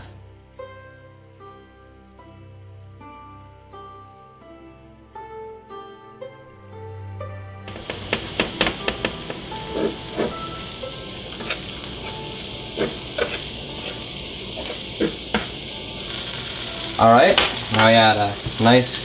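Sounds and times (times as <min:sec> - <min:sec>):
utensil tapping against pan: 0:07.7 - 0:10.4, 0:14.6 - 0:15.6
food frying in oil: 0:07.7 - 0:19.0.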